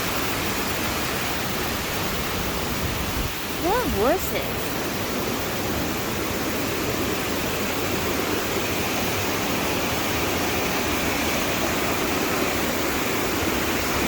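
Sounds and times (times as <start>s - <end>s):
waterfall rushing: 0.0s - 14.0s.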